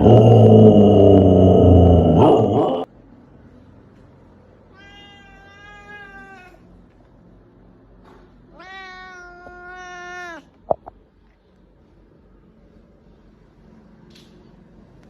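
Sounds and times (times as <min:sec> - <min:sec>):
cat meowing: 0:04.7 - 0:06.7, 0:08.5 - 0:10.5.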